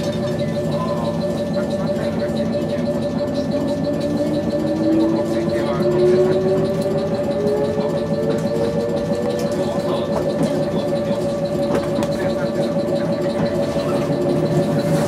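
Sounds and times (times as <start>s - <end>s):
traction motor whine rising: 3.0s - 15.0s.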